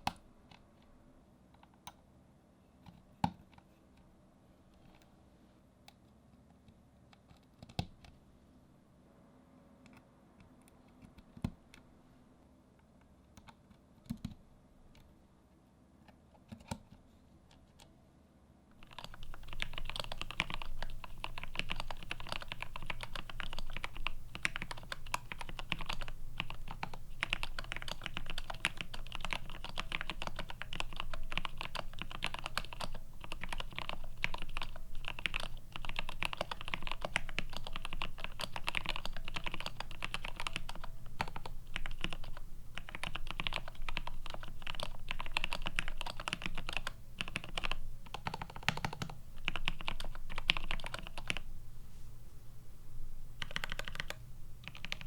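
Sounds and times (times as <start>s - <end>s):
fast typing on mechanical keyboard: 18.8s - 51.5s, 53.4s - 55.0s.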